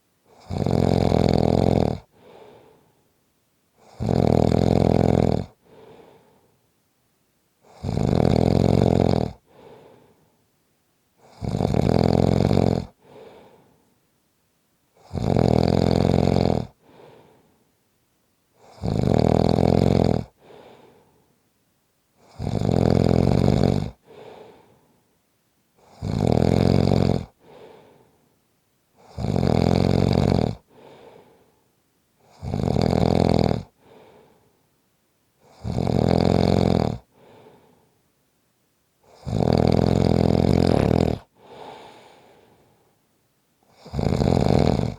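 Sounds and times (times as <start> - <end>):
person snoring loudly: 0.3 - 2.4, 3.8 - 5.6, 7.7 - 9.4, 11.2 - 13.0, 15.0 - 16.8, 18.6 - 20.4, 22.2 - 24.3, 25.8 - 27.4, 29.0 - 30.6, 32.2 - 33.8, 35.4 - 37.1, 39.1 - 42.0, 43.7 - 44.9
soft breath: 2.0 - 3.2, 5.6 - 6.7, 9.4 - 10.5, 13.0 - 14.0, 16.8 - 17.8, 20.3 - 21.4, 24.0 - 25.2, 27.4 - 28.4, 30.6 - 31.8, 33.7 - 34.7, 37.1 - 38.0, 40.4 - 43.0.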